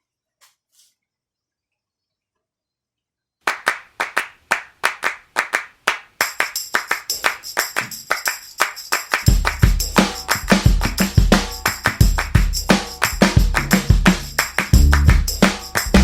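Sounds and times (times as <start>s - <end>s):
handclap rhythm: 3.5s - 16.0s
jingling tambourine: 6.2s - 16.0s
bass and drums: 9.3s - 16.0s.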